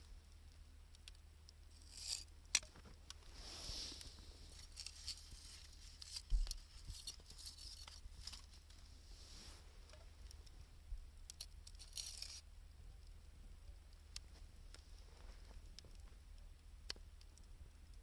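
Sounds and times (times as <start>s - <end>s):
fire popping: 0.0s - 18.0s
wood fire crackling: 0.0s - 18.0s
fire hiss: 3.1s - 10.6s.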